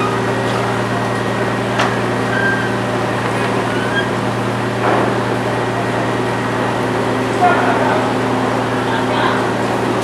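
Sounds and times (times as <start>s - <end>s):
boat engine running: 0.0s - 10.0s
dockside noise: 0.0s - 10.0s.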